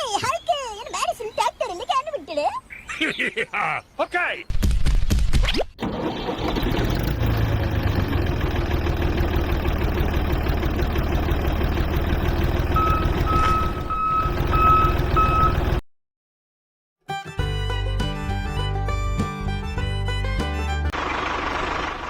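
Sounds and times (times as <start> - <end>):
truck engine running: 5.8 - 15.8, 20.9 - 22.0
reversing alarm beeping: 12.6 - 15.8.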